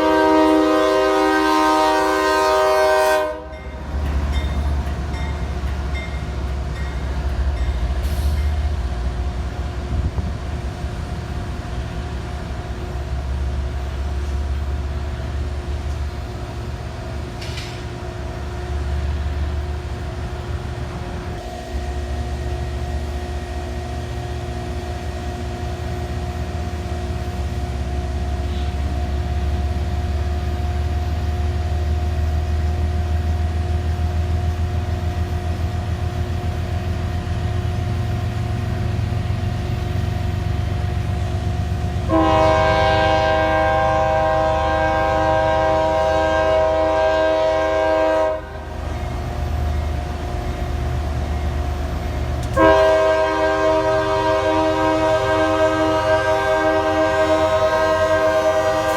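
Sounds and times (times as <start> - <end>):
locomotive horn blast: 0.0 - 4.0, 28.4 - 28.9, 42.0 - 49.0, 52.4 - 58.9
diesel locomotive engine running: 0.0 - 58.9.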